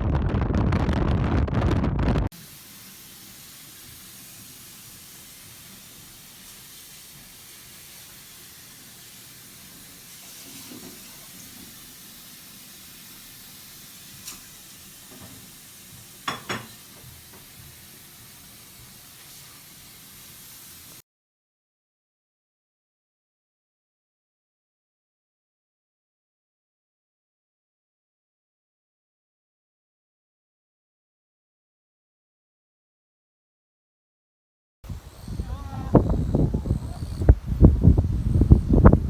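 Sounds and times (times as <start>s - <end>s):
faint hiss: 2.3s - 21.0s, 34.9s - 39.0s.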